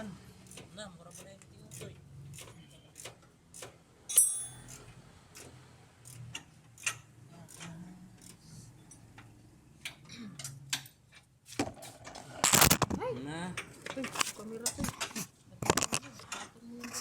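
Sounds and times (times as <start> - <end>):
metal tools clicking and clinking: 4.1 - 4.9
sharp ringing metal clink: 4.1 - 4.9.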